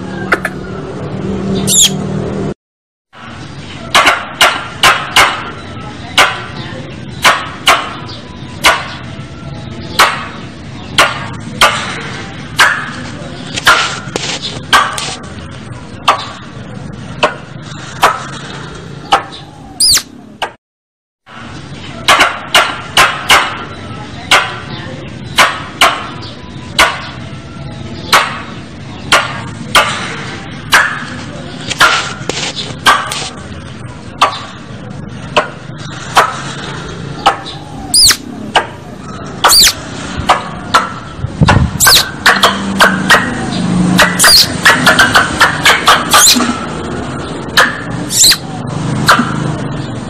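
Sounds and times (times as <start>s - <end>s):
squirrel chipping calls: 1.6s - 2.0s, 19.0s - 20.2s, 37.2s - 38.7s, 39.4s - 39.9s, 40.7s - 46.5s, 47.5s - 48.5s.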